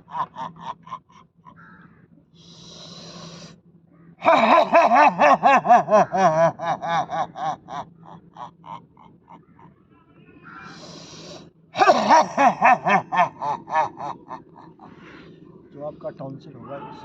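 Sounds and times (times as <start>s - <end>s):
man exhaling with breathy hiss: 2.4s - 3.6s, 10.7s - 11.5s
man roaring aaah from throat: 11.8s - 12.4s.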